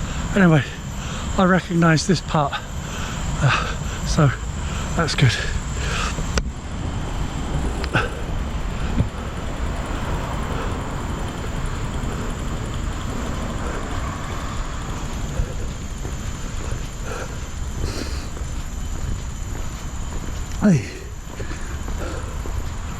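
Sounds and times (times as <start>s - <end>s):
road traffic: 0.0s - 22.9s
footsteps: 12.2s - 22.9s.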